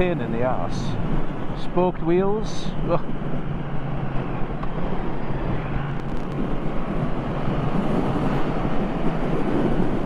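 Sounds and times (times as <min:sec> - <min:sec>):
wind and road noise: 0:00.0 - 0:10.0
motorcycle engine running: 0:05.4 - 0:07.3.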